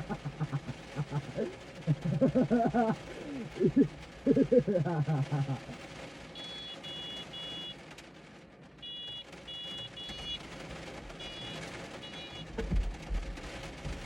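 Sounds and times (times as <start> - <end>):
electronic horn beeping: 6.4 - 7.8, 8.8 - 10.4, 11.1 - 12.6.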